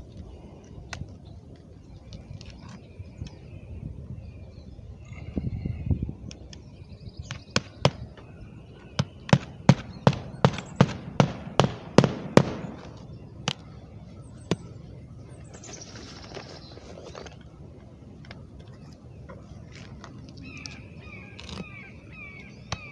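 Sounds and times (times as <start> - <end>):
sharp knocks: 9.0 - 13.0.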